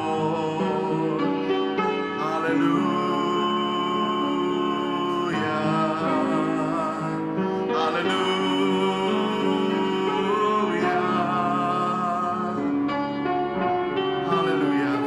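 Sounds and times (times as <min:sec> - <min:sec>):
person singing: 0:00.0 - 0:13.2, 0:14.1 - 0:15.0
slow worship music chords: 0:00.0 - 0:15.0.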